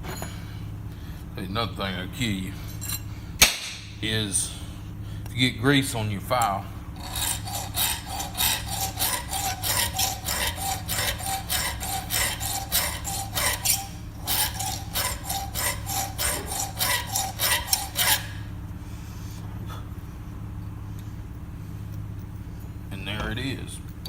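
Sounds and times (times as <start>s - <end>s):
hand file rasping on metal: 7.0s - 18.5s.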